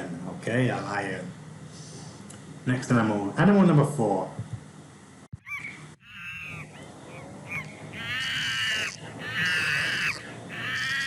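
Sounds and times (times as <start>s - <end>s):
monkey screeching calls: 5.4s - 11.0s.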